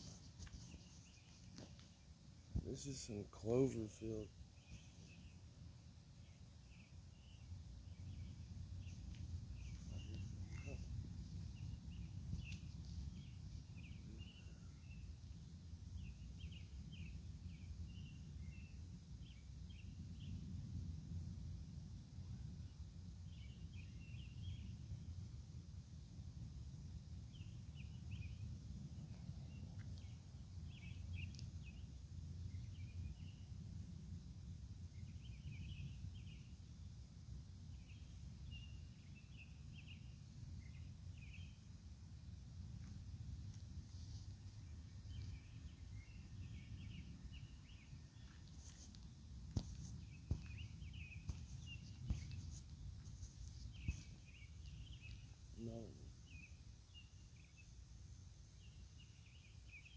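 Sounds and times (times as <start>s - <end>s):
faint bird chirps: 0.0s - 5.5s, 6.2s - 15.2s, 43.9s - 59.9s.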